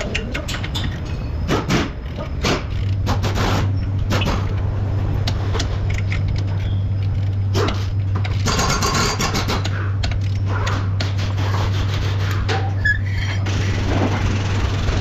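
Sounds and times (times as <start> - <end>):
machine low hum: 0.0 - 15.0.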